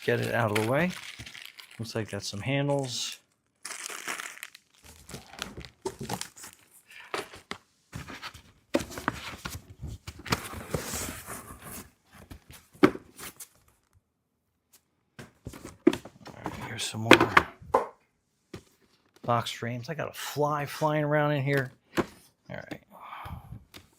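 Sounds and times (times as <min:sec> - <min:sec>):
packing rustling: 0:00.0 - 0:02.2, 0:02.9 - 0:06.8.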